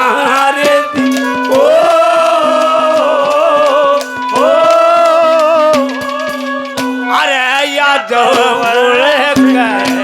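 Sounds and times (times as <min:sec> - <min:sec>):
drum strokes: 0:00.0 - 0:10.0
wavering sung note: 0:00.8 - 0:10.0
steady drone: 0:00.9 - 0:07.4.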